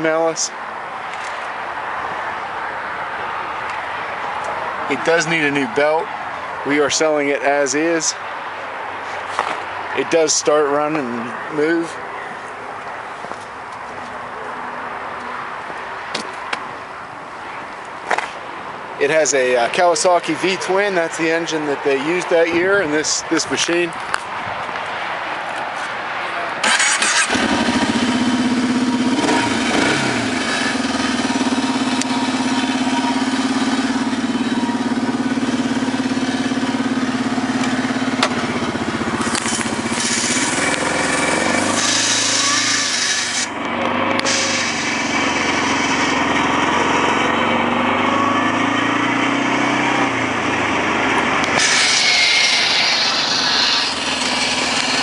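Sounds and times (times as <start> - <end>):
atv engine revving: 26.6 - 55.0.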